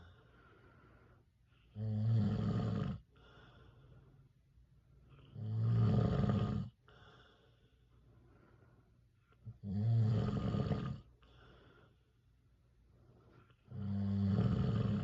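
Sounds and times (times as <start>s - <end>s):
quiet breathing: 0.0s - 15.0s
man snoring: 1.7s - 3.0s, 5.1s - 6.8s, 9.5s - 11.1s, 13.7s - 15.0s.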